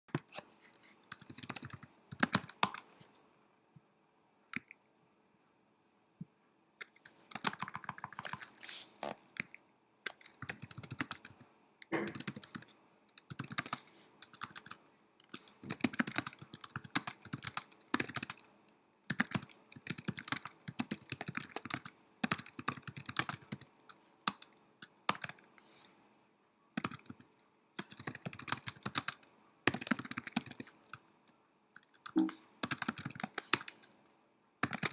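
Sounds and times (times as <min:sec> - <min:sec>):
laptop keyboard typing: 0:01.0 - 0:03.0, 0:06.8 - 0:18.5, 0:19.1 - 0:25.7, 0:26.8 - 0:31.1, 0:31.8 - 0:34.0, 0:34.6 - 0:34.9.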